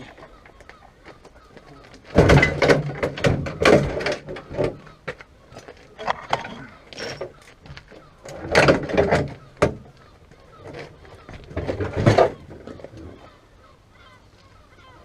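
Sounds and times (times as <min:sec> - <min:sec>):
knocks and bangs: 0:02.1 - 0:05.2.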